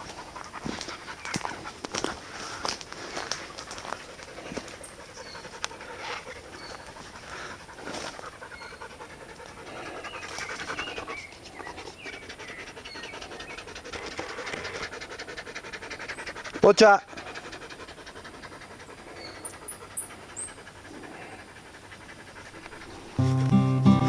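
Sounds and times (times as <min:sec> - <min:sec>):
dog panting: 0:00.0 - 0:23.8
rustling: 0:22.4 - 0:24.0.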